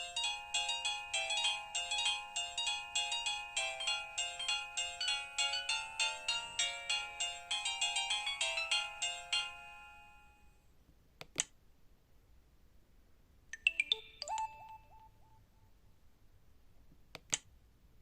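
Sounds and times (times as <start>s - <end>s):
polyphonic ringtone melody: 0.0s - 10.4s, 13.6s - 15.1s.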